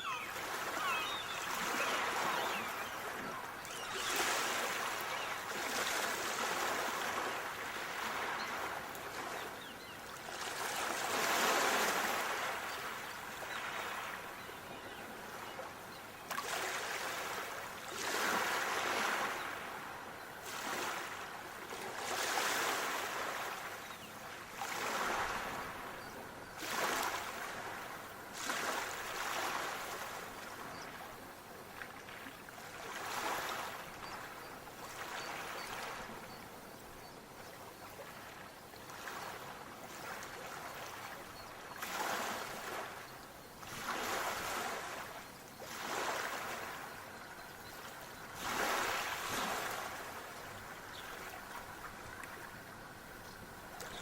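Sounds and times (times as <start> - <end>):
sea waves washing in: 0.0 - 9.0.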